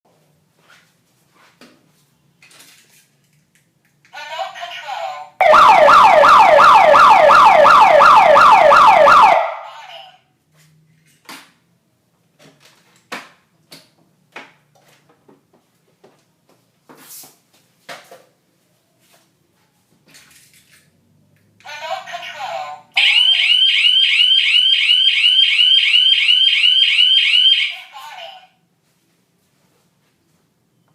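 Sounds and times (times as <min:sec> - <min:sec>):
security alarm siren: 0:05.4 - 0:09.8, 0:23.0 - 0:27.8.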